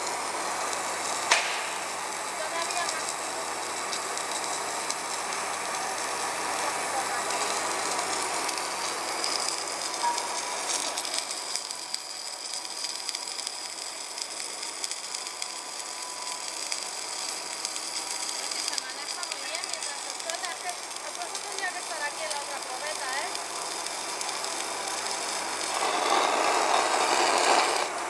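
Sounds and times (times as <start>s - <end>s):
welding arc crackling: 0.0s - 28.0s.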